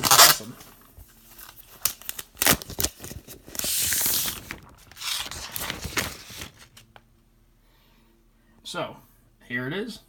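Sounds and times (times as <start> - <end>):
plastic packaging rustling: 0.0 - 7.0
plastic peeling off: 1.4 - 7.0.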